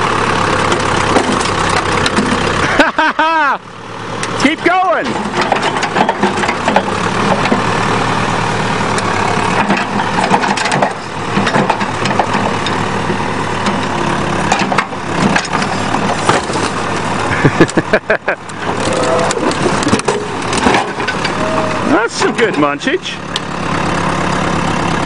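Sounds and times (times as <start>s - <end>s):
backhoe engine running: 0.0s - 25.0s
metal crunching and cracking: 0.6s - 2.6s, 4.2s - 8.0s, 8.9s - 17.8s, 18.4s - 21.4s.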